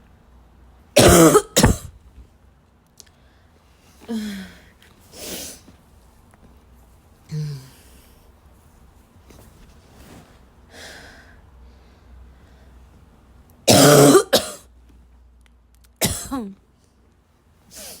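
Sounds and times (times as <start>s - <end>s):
girl coughing: 1.0s - 1.9s, 13.7s - 14.6s, 16.0s - 16.6s.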